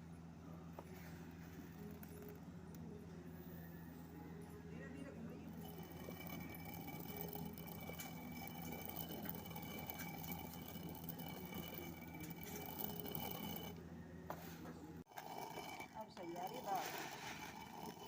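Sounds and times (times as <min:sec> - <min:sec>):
stone quern grinding rumble: 0:05.5 - 0:18.0.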